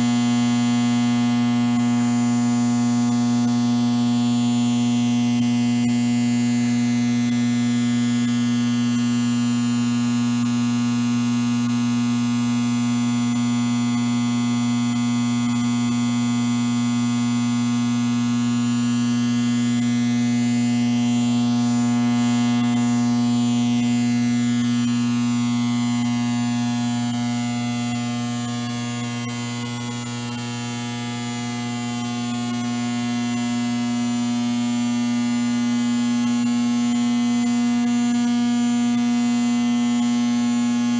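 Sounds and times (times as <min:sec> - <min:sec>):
electrical hum buzzing: 0:18.6 - 0:35.3.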